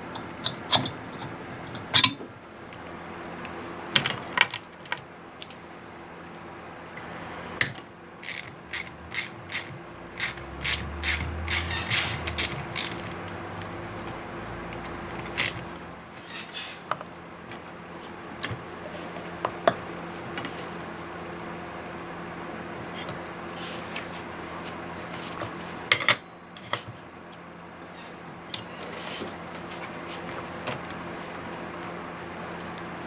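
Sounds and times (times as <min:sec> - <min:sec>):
steady low hum: 0:06.2 - 0:16.4
ratchet wrench clicking: 0:08.2 - 0:15.6.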